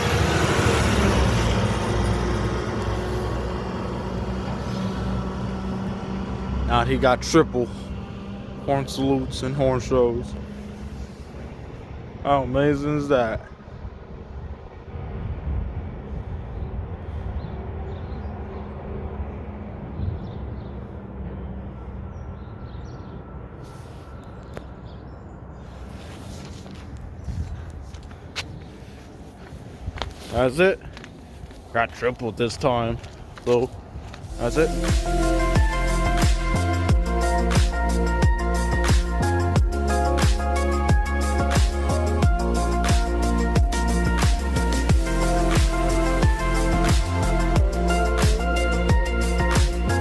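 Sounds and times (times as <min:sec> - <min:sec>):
garbage truck engine: 0:00.0 - 0:12.2
road noise rushing: 0:00.0 - 0:50.0.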